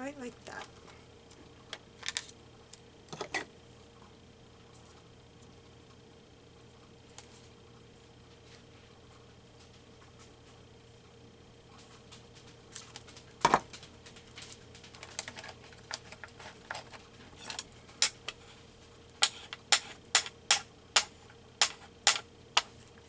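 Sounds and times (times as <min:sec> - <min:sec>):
scissors snipping paper: 0:19.2 - 0:22.8.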